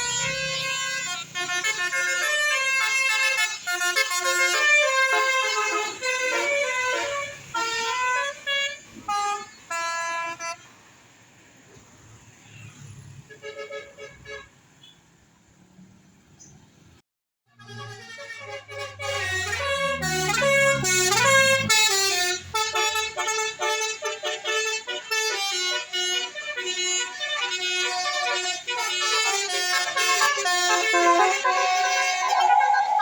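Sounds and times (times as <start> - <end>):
musical multi-tone air horn: 0.0 - 10.6, 17.5 - 33.0.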